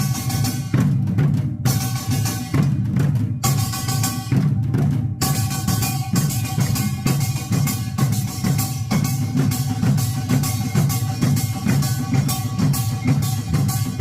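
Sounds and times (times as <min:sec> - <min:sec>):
barrel drums playing a rhythm: 0:00.0 - 0:14.0
ringing metallic tones: 0:05.2 - 0:14.0.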